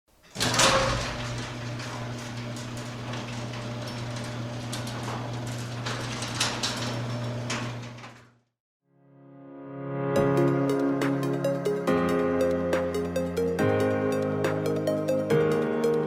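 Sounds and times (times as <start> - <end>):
garage door motor hum: 0.1 - 8.5
rollers rattling in tracks: 0.3 - 8.0.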